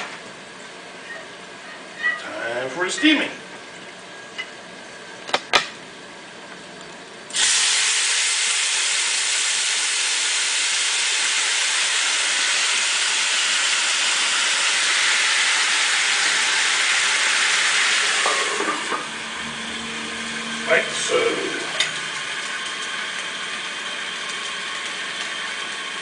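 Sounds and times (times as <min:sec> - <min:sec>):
broth hissing in hot pan: 0:07.3 - 0:26.0.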